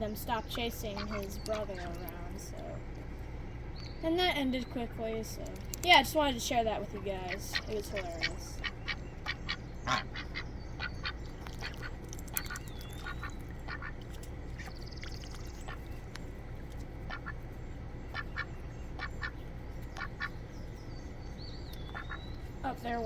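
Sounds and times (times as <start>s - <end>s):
ducks quacking: 0.6s - 2.0s, 6.7s - 15.9s, 17.1s - 17.4s, 18.1s - 20.4s, 21.8s - 22.3s.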